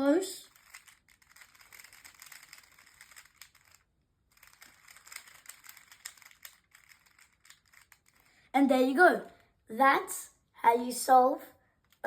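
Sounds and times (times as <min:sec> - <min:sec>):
puzzle cube clicking: 0:00.5 - 0:08.3.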